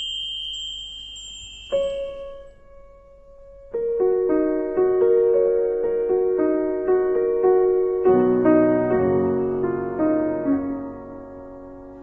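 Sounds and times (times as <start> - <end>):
high ding: 0.0 - 2.8
gentle piano melody: 0.0 - 12.0.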